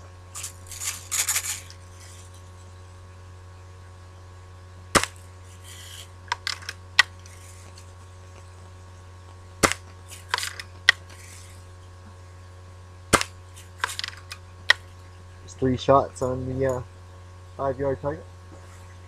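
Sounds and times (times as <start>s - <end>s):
bb gun firing: 4.9s - 5.2s, 9.6s - 11.0s, 13.1s - 14.8s.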